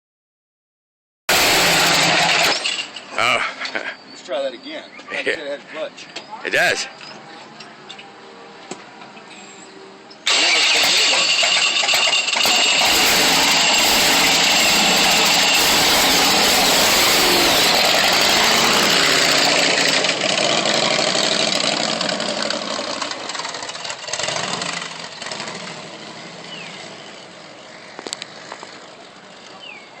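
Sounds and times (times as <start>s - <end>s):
scooter engine running rough: 1.3s - 3.0s, 10.3s - 26.8s.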